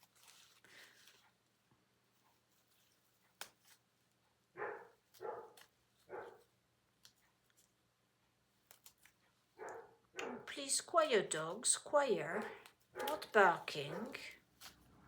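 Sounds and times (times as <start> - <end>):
dog barking: 4.6 - 6.5, 9.6 - 10.5, 12.4 - 14.3.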